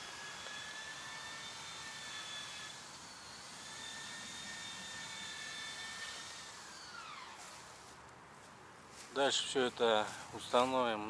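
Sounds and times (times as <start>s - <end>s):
machine whining: 0.0s - 7.9s.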